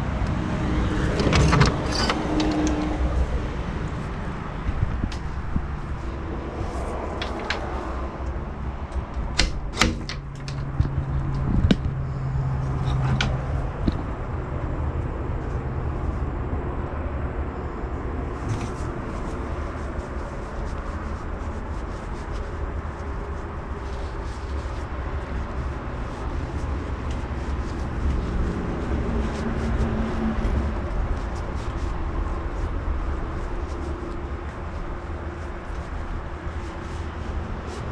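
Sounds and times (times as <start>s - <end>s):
vehicle road rumble: 0.0s - 37.9s
sharp clicks and knocks: 1.1s - 2.9s, 8.9s - 12.0s, 12.8s - 14.1s.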